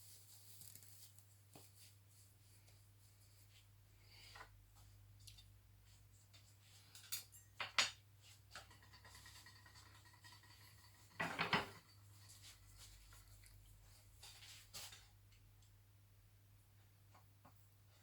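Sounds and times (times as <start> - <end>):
tools clicking and knocking: 7.0 - 12.1
tools clattering: 7.0 - 13.1.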